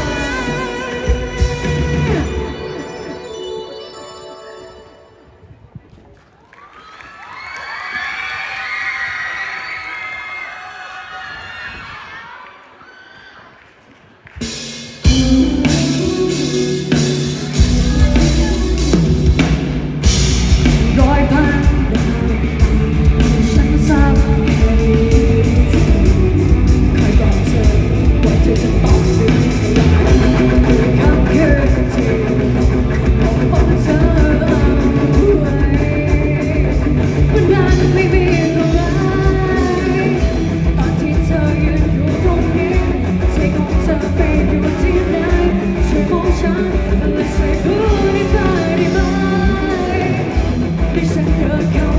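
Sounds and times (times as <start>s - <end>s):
drums: 0.0s - 3.3s, 5.5s - 51.9s
electric guitar: 0.0s - 3.3s, 15.0s - 51.9s
person singing: 0.0s - 5.6s, 15.0s - 51.9s.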